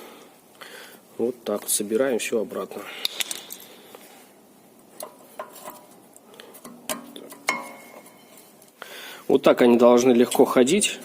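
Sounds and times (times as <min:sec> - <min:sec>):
metal clinks and taps: 0:06.6 - 0:08.7.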